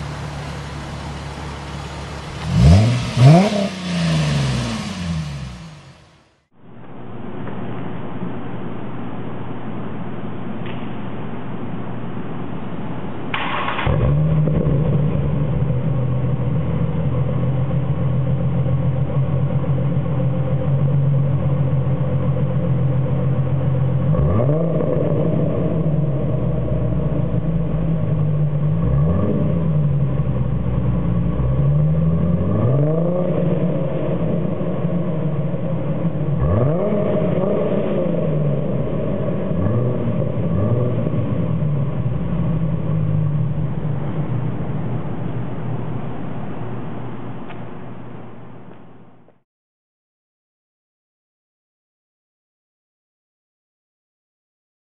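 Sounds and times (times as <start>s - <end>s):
car engine idling: 0.0s - 6.5s, 13.6s - 24.5s, 25.1s - 32.6s, 33.2s - 49.2s
car engine revving: 0.0s - 6.5s, 13.4s - 47.3s.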